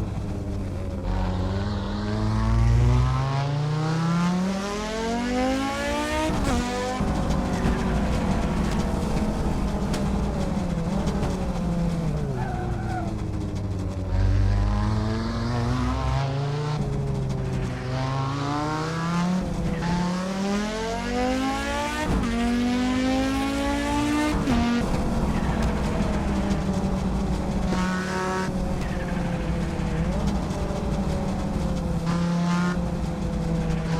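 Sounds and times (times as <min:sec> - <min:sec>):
car engine accelerating: 0:00.0 - 0:33.9.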